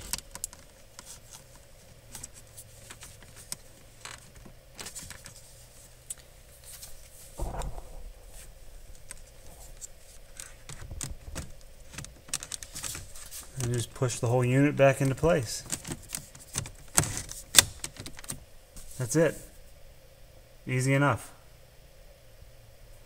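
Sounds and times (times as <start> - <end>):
small plastic clicks and rustles: 0.0 - 6.9, 9.0 - 14.2, 14.9 - 18.4
loud low thump: 7.4 - 10.2.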